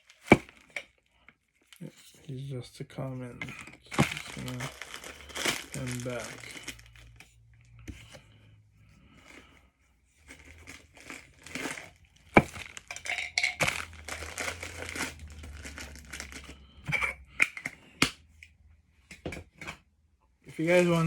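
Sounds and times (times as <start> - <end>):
plastic packaging crinkling: 3.6 - 7.2, 10.3 - 16.6.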